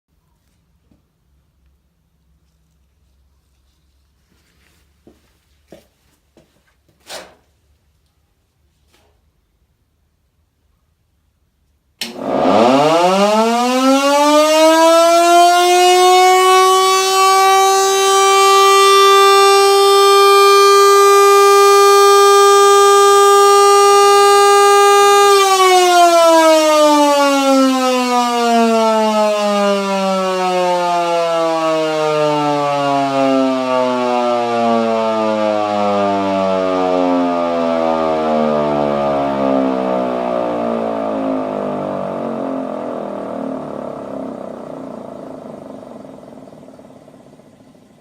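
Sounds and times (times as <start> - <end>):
air raid siren wailing: 12.0 - 48.0.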